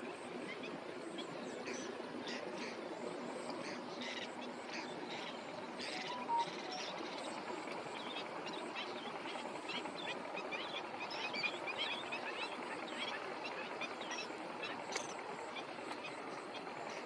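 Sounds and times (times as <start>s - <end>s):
bird chirps: 5.8s - 7.4s.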